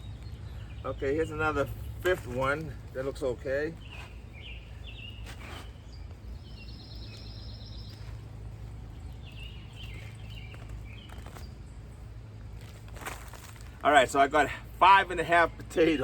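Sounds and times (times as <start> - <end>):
high bird trill: 0.0 - 12.2
steady low rumble: 0.0 - 15.9
birds chirping: 0.0 - 16.0
hand digging soil rustles: 0.9 - 14.6.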